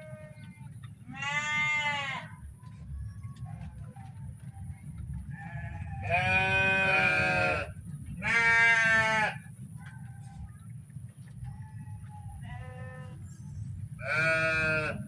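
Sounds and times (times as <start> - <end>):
farm animal bleating: 0.0 - 2.4, 5.3 - 9.5, 12.4 - 13.4, 14.0 - 15.0
low rumble: 0.0 - 15.0.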